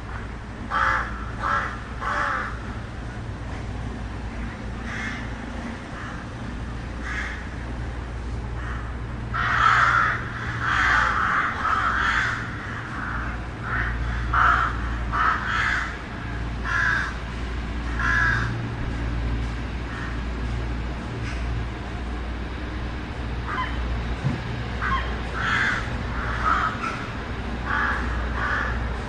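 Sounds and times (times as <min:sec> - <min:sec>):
distant city traffic: 0:00.0 - 0:29.0
crows cawing: 0:00.1 - 0:02.8, 0:04.8 - 0:05.3, 0:05.9 - 0:06.3, 0:07.0 - 0:07.6, 0:08.6 - 0:18.6, 0:19.9 - 0:20.3, 0:23.4 - 0:23.8, 0:24.8 - 0:28.9.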